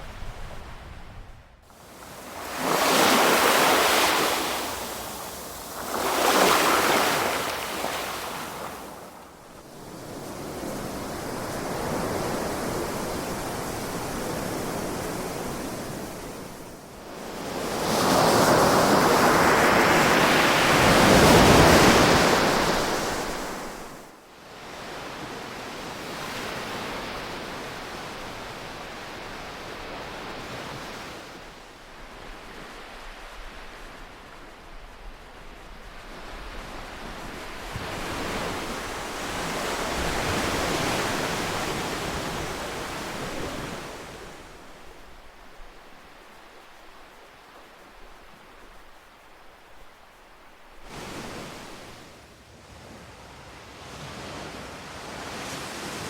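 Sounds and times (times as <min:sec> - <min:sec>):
ocean surf washing in: 0:01.7 - 0:16.8.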